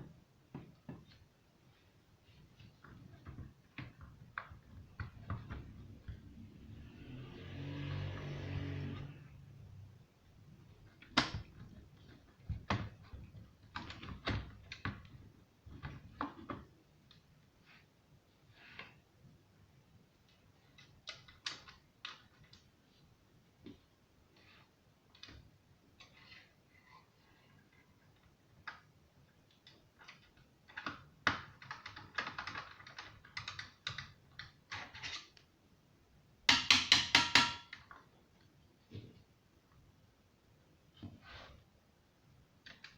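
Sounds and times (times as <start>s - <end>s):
clicks and taps of hard parts: 36.5s - 38.1s.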